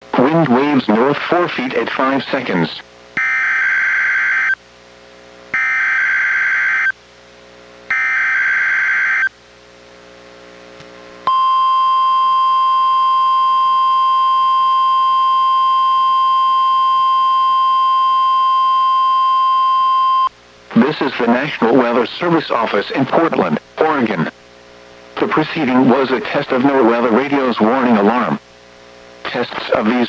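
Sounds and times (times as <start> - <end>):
steady warning alarm tone: 3.2 - 4.6, 5.6 - 7.0, 7.9 - 9.3, 11.3 - 20.3.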